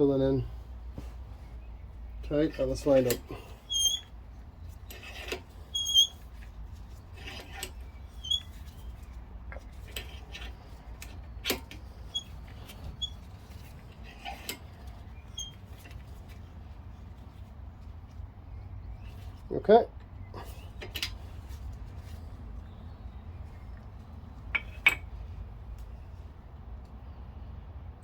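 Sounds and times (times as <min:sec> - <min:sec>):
scrapes of brake parts: 0:00.9 - 0:18.2, 0:24.4 - 0:25.2.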